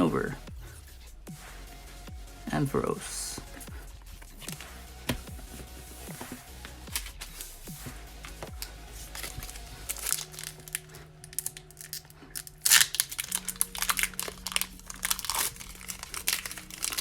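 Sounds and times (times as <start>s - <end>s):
faint background music: 0.0s - 17.0s
foil wrapper crinkling: 8.5s - 17.0s.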